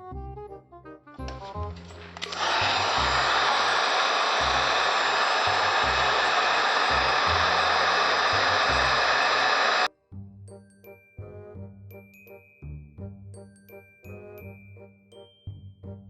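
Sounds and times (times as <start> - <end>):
background music with bass line: 0.0 - 2.2
heat gun blowing: 1.9 - 9.9.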